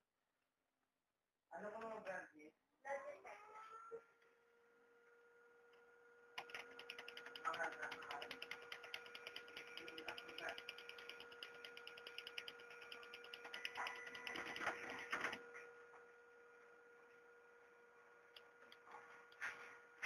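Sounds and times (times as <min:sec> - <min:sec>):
steady electrical hum: 0:04.7 - 0:20.0
separate clicks: 0:06.4 - 0:15.3
fast mechanical ticking: 0:06.4 - 0:15.4.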